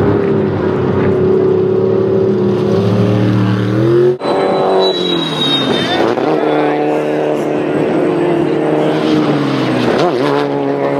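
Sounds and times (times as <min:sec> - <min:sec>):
race buggy engine running hard: 0:00.0 - 0:10.9.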